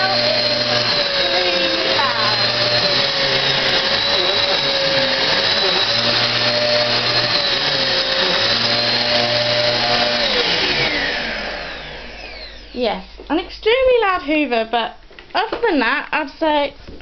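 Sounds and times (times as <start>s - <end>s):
vacuum cleaner motor whine: 0.0s - 13.2s.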